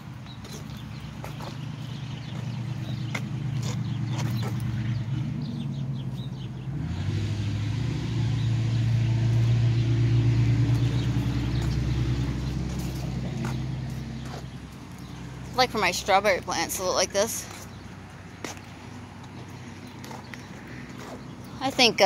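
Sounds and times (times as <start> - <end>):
car engine running: 0.7 - 15.7.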